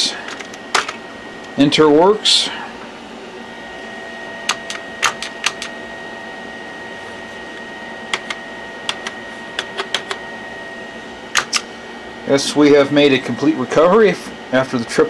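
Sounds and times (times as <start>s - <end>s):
background hum: 0.0s - 15.0s
faint high whine: 0.0s - 15.0s
keyboard keys clicking: 4.5s - 5.7s, 8.1s - 10.2s.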